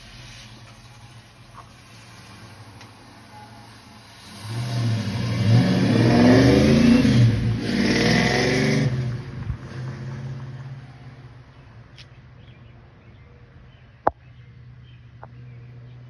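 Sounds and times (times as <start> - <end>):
car engine revving and idling: 0.0 - 11.6.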